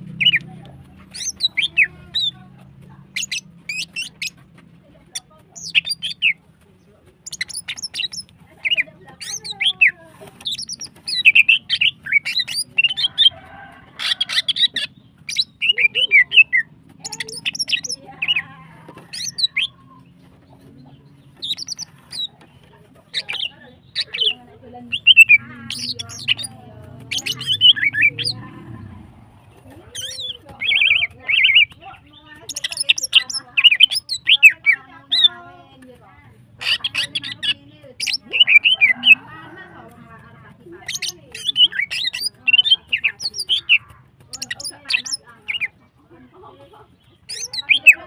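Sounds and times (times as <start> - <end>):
bird chirping and whistling: 1.1 - 2.3, 3.1 - 4.4, 7.3 - 9.7, 10.4 - 13.0, 14.1 - 18.4, 19.1 - 19.8, 21.4 - 22.3, 23.2 - 26.5, 27.1 - 28.4, 29.9 - 31.8, 32.5 - 35.3, 36.6 - 39.2, 40.8 - 45.7, 47.2 - 48.0.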